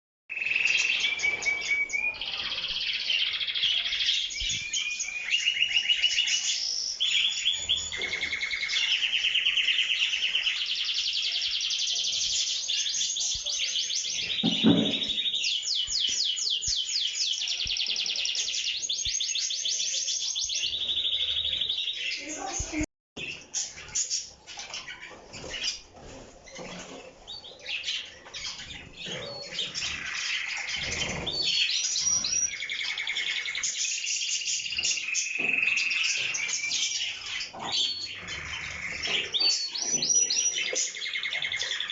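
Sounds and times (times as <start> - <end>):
canary singing rolled trills: 0.3 - 41.9.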